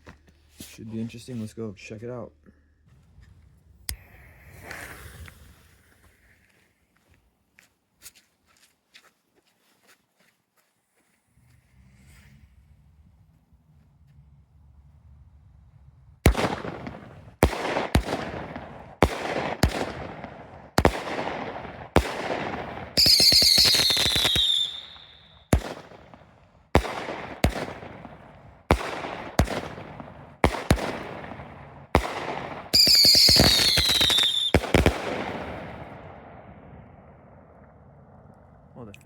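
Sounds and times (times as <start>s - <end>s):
firework bangs with crackle: 16.2s - 37.4s
firework whistle falling in pitch: 23.0s - 25.4s.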